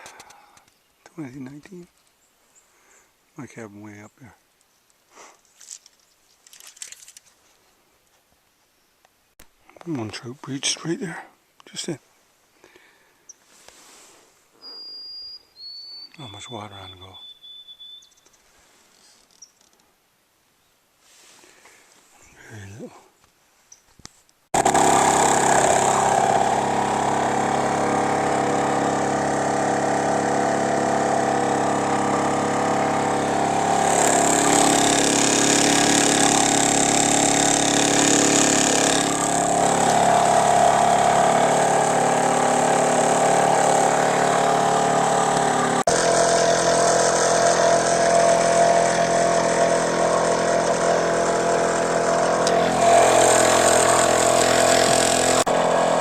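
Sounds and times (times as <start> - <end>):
small engine running steadily: 24.6 - 56.0.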